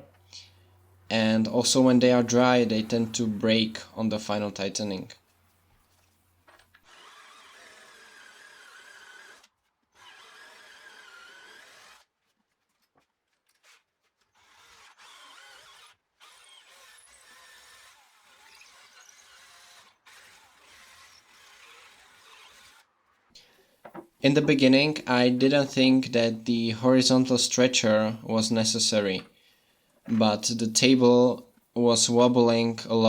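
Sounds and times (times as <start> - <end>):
faint power drill whining: 6.5 - 12.2, 13.5 - 23.9.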